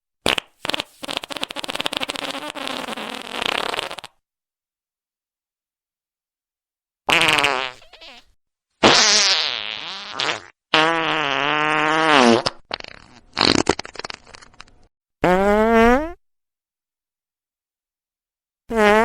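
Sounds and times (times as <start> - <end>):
fart sounds: 0.2 - 4.2, 7.1 - 16.2, 18.7 - 19.0.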